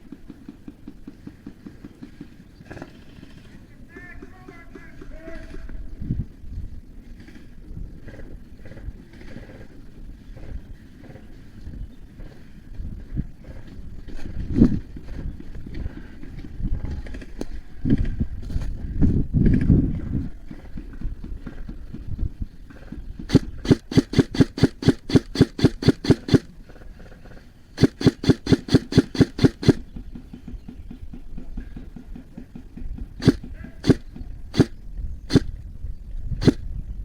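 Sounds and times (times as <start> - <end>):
airsoft gun firing: 23.3 - 26.5, 27.8 - 29.8, 33.2 - 34.0.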